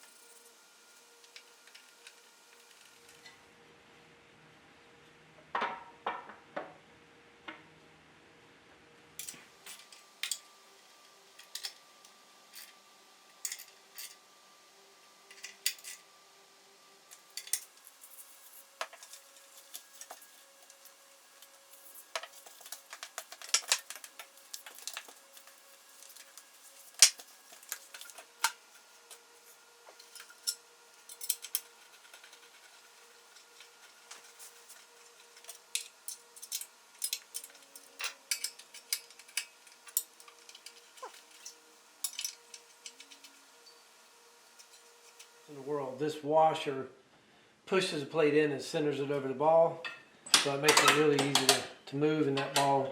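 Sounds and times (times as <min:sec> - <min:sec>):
metal parts clicking and clinking: 0:09.2 - 0:10.5, 0:11.4 - 0:12.8, 0:13.4 - 0:14.2, 0:15.3 - 0:16.0, 0:17.1 - 0:29.3, 0:29.9 - 0:43.4.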